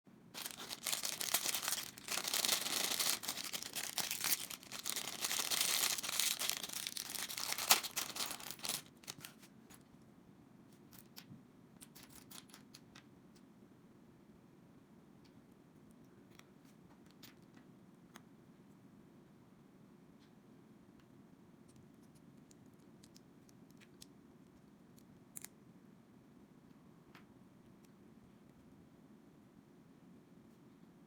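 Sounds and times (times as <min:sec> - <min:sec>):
plastic packaging tearing and crinkling: 0:00.4 - 0:09.4.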